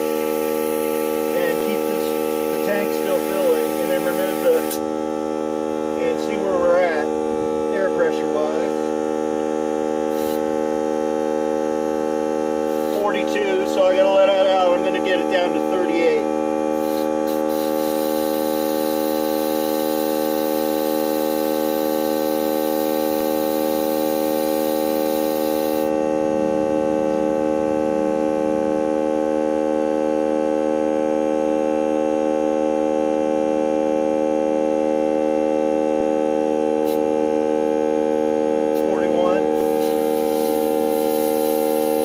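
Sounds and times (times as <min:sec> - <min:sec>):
air compressor humming: 0:00.0 - 0:42.0
air hissing from tire valve: 0:03.2 - 0:04.8, 0:10.1 - 0:10.4, 0:12.7 - 0:13.0, 0:16.7 - 0:25.9, 0:36.8 - 0:37.0, 0:39.6 - 0:42.0.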